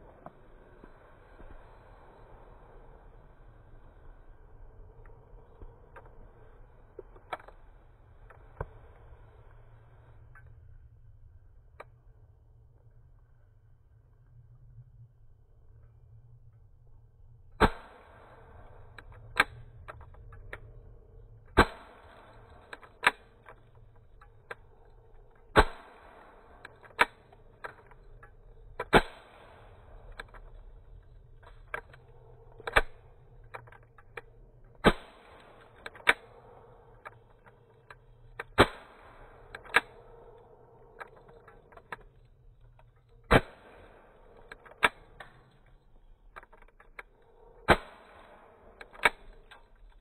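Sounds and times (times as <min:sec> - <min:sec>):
pistol firing sharp cracks: 0:21.6 - 0:23.6, 0:25.5 - 0:27.9, 0:28.8 - 0:30.4, 0:34.8 - 0:37.1, 0:38.4 - 0:40.0, 0:43.2 - 0:45.2, 0:47.6 - 0:49.6.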